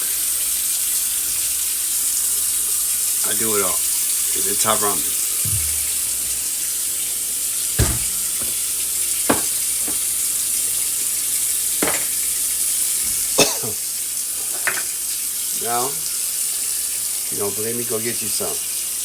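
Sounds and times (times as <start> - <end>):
tap running into sink: 4.6 - 6.6, 7.8 - 10.3, 11.8 - 12.3
short knocks: 5.4 - 6.4, 7.8 - 8.6, 9.3 - 10.1.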